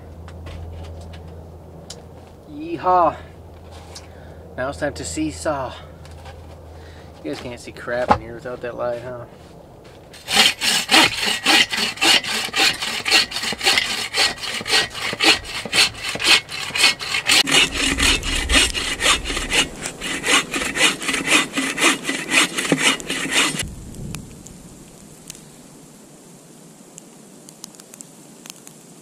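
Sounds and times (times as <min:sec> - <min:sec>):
hand saw cutting wood: 0:10.2 - 0:23.6.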